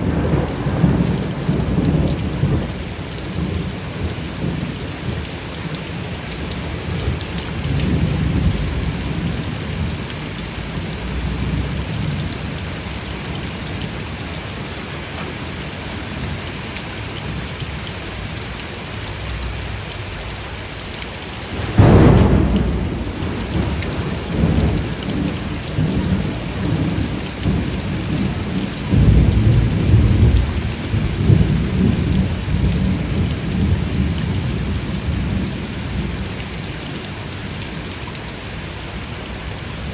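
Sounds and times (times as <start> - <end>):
loud thunderclap: 0.0 - 3.6, 7.6 - 10.0, 21.5 - 36.1
thunder rumbling: 0.0 - 5.3, 6.4 - 13.8, 21.4 - 36.4
heavy rain: 0.0 - 39.9.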